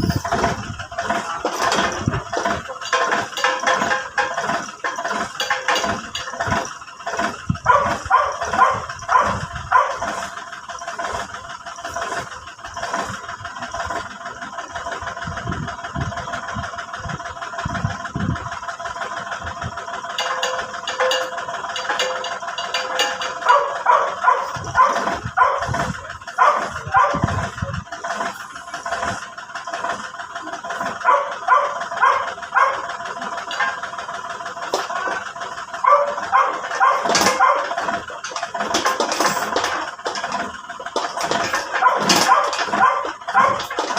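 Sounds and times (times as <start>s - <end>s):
backhoe engine running: 0.0s - 43.9s
dog barking: 7.7s - 10.1s, 23.5s - 25.8s, 26.4s - 27.3s, 31.0s - 32.9s, 35.8s - 37.8s, 41.8s - 43.7s.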